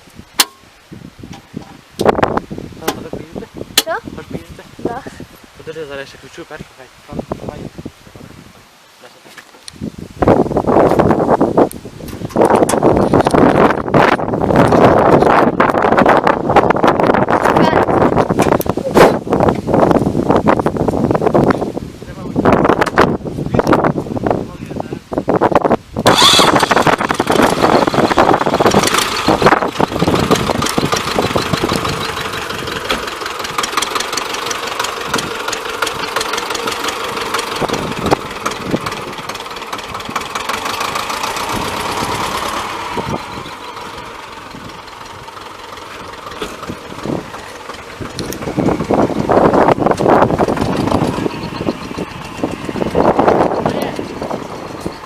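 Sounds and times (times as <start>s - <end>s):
tractor diesel engine clattering: 12.1s - 19.5s, 25.6s - 55.0s.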